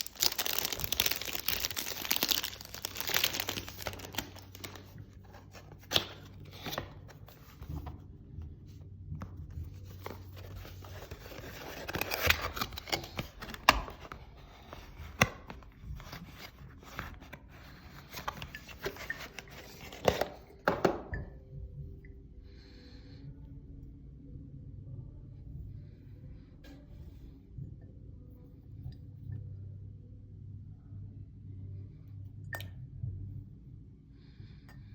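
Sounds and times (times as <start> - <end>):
box packaging tearing and crinkling: 0.0 - 7.0, 10.2 - 17.3, 18.0 - 20.4.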